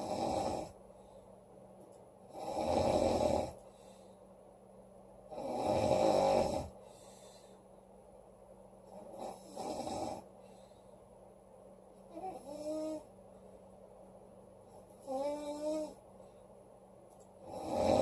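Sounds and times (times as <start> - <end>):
woman snoring loudly: 0.0 - 0.8, 2.3 - 3.6, 5.3 - 6.8, 9.0 - 10.2, 15.0 - 16.0, 17.4 - 18.0.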